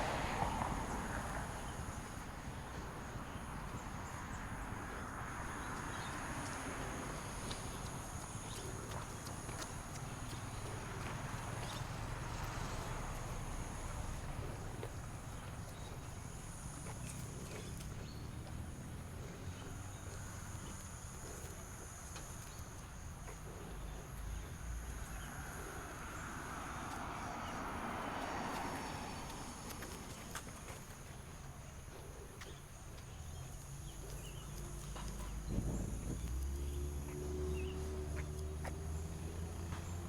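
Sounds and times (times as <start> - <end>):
vehicle passing by: 0.0 - 22.0, 23.6 - 32.2, 33.1 - 40.0
footsteps walking: 7.4 - 12.6, 28.5 - 39.9.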